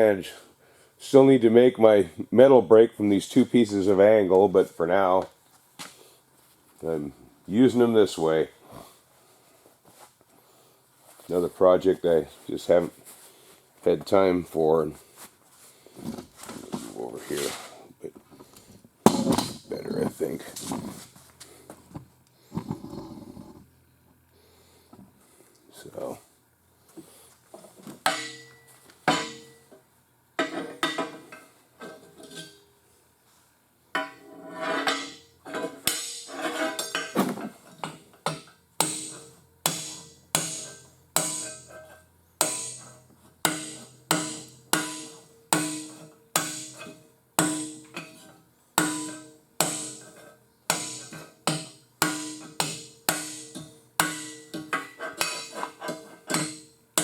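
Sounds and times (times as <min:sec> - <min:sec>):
hammer blows on sheet steel: 0:38.8 - 0:41.8, 0:42.4 - 0:48.0, 0:48.8 - 0:55.7.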